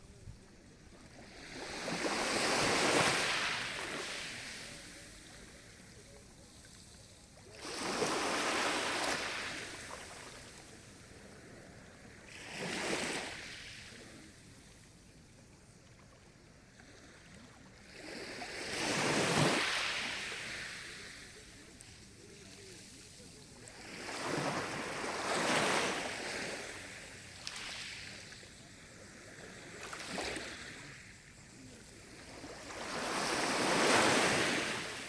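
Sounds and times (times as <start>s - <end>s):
sea waves breaking on shore: 1.0s - 6.0s, 7.5s - 11.1s, 17.9s - 35.0s.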